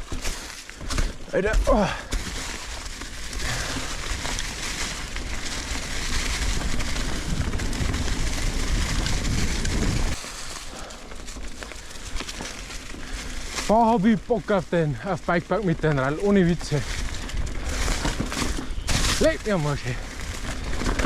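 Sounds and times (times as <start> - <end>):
bike tyres rumbling on dirt: 0.0 - 21.0
wind on microphone: 6.5 - 10.2.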